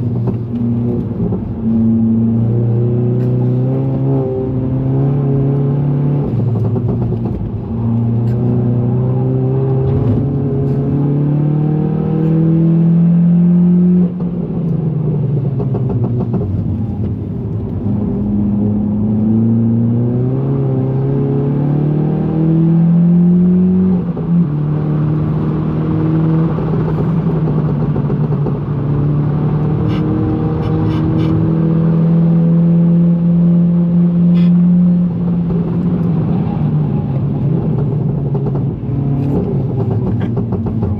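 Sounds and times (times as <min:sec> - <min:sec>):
car engine revving hard: 0:28.5 - 0:40.9.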